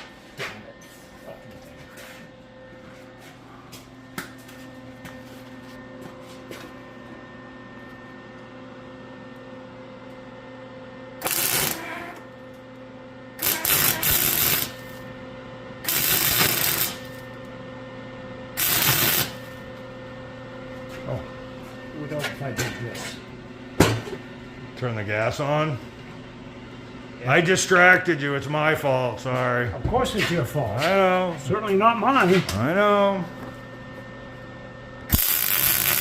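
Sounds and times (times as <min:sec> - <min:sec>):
electrical hum: 0:00.0 - 0:36.0
welding bursts: 0:11.2 - 0:12.0, 0:13.4 - 0:15.0, 0:15.9 - 0:17.2, 0:18.6 - 0:19.5, 0:35.1 - 0:36.0.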